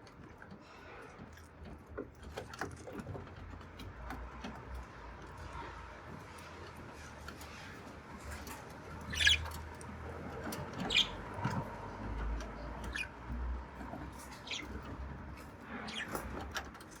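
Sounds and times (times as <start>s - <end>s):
bird squeaky chirps: 9.0s - 9.6s, 10.8s - 11.3s, 12.8s - 13.2s, 14.2s - 16.4s.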